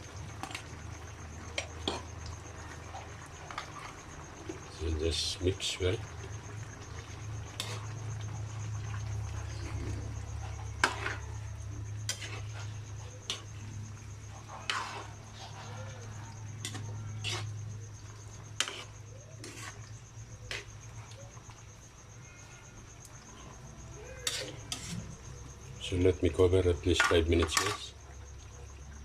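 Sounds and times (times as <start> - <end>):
steady low hum: 0.0 - 27.1
spoon clinking and scraping a pan: 16.6 - 17.6, 18.6 - 19.9, 24.2 - 25.0, 26.9 - 27.9.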